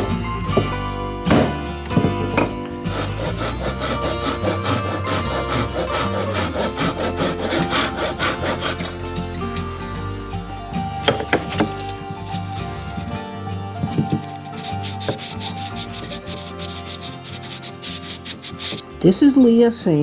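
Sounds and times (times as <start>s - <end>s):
background music: 0.0s - 20.0s
hand saw cutting wood: 2.8s - 9.1s, 11.0s - 13.3s, 14.0s - 18.9s.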